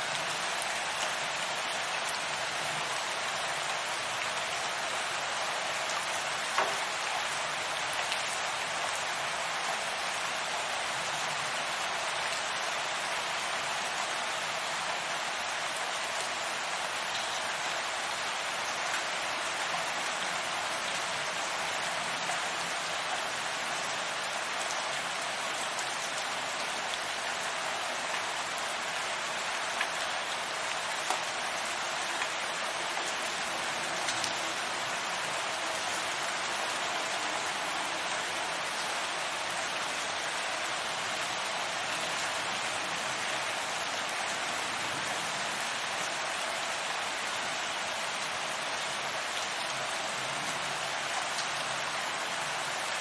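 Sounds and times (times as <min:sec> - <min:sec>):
steady rain hiss: 0:00.0 - 0:53.0
raindrops ticking: 0:06.5 - 0:07.0.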